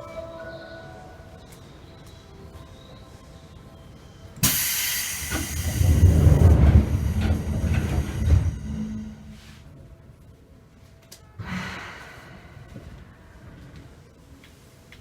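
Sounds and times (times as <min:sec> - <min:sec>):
air hiss: 0:04.4 - 0:08.6
train doors rumbling and knocking: 0:04.4 - 0:09.5.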